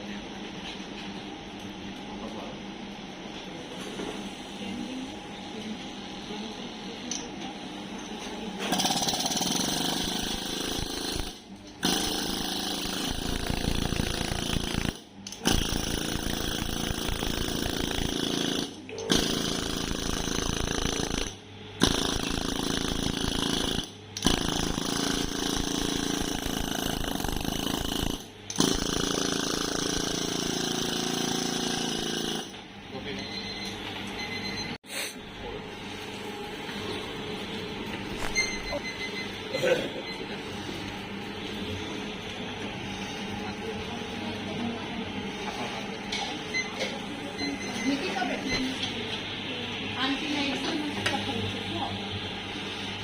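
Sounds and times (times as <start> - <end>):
electric massager buzzing: 8.6 - 21.3, 21.9 - 32.6.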